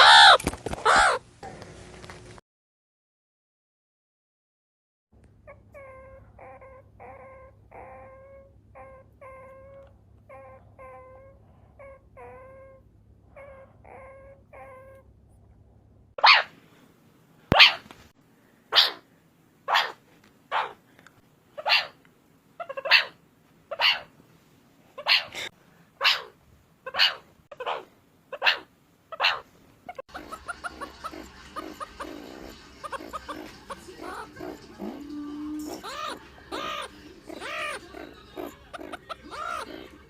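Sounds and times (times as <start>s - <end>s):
meerkats chirping: 0.0s - 1.2s, 5.4s - 12.8s, 13.4s - 15.0s, 17.5s - 17.8s, 18.7s - 19.0s, 19.7s - 20.8s, 21.6s - 22.0s, 22.6s - 24.1s, 25.0s - 40.0s
meerkats harsh raspy calls: 0.0s - 1.2s, 5.8s - 12.8s, 13.4s - 15.0s, 16.2s - 16.5s, 17.5s - 17.8s, 18.7s - 19.1s, 19.7s - 20.8s, 21.6s - 22.0s, 22.6s - 24.1s, 25.0s - 40.0s.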